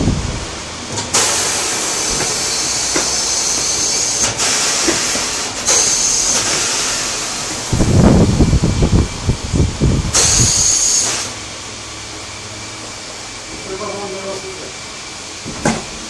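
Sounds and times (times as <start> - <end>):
compressed air hissing: 1.1 - 11.4.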